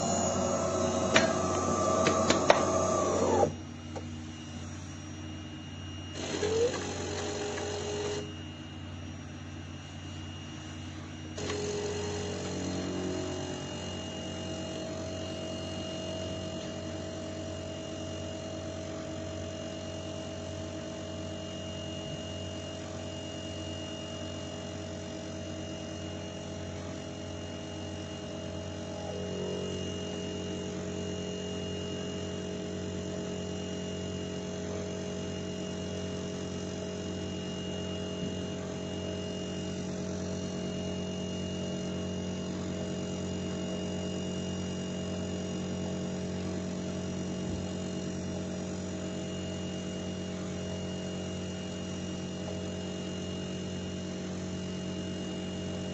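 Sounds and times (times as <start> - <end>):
machine humming: 0.0 - 4.0.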